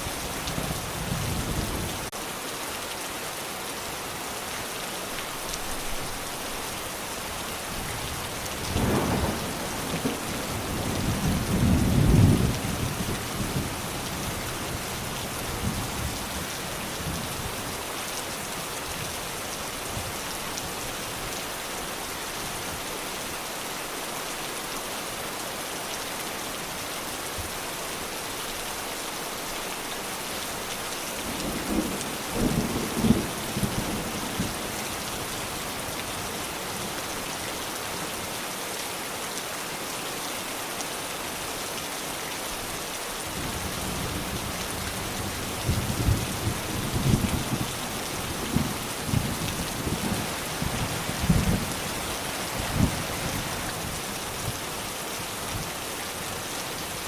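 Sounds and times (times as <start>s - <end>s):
steady rain: 0.0s - 57.0s
thunder rumbling: 8.7s - 12.8s.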